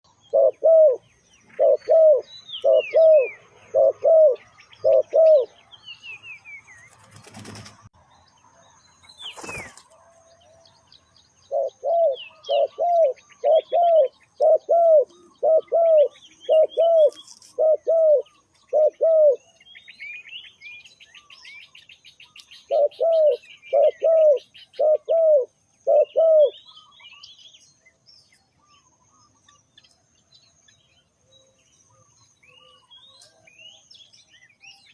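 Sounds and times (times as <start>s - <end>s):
dove cooing: 0.1s - 5.6s, 11.4s - 19.5s, 22.6s - 26.7s
small birds chirping: 0.1s - 34.9s.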